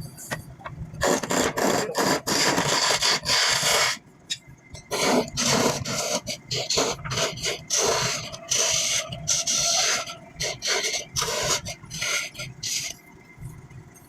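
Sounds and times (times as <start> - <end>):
hand tool scraping wood: 1.0 - 4.0, 4.8 - 13.0.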